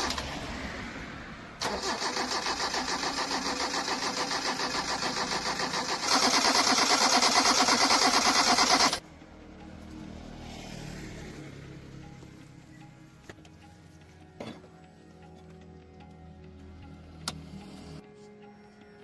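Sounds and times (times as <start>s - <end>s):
car engine cranking on starter: 1.6s - 9.0s.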